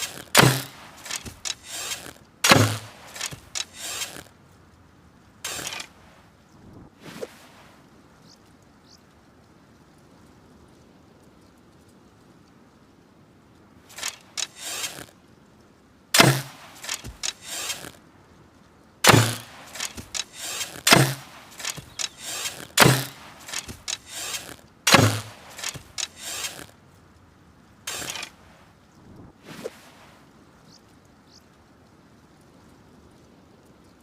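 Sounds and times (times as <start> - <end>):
bow string snapping: 0.0 - 4.3, 16.2 - 18.0, 19.1 - 26.7
handling clicks and rattles: 0.0 - 4.3, 5.5 - 5.9, 13.9 - 15.1, 16.2 - 18.0, 19.0 - 26.7, 27.9 - 28.4.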